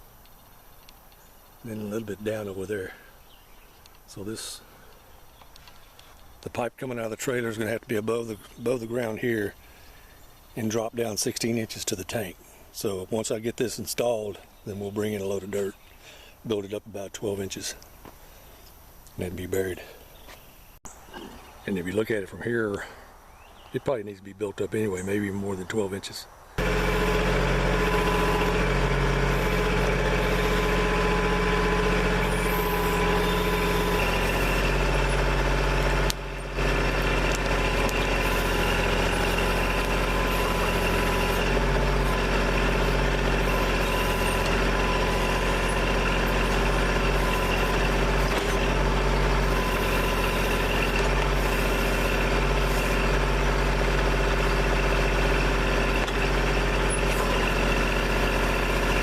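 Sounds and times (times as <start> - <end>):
backhoe diesel engine running: 26.6 - 59.0.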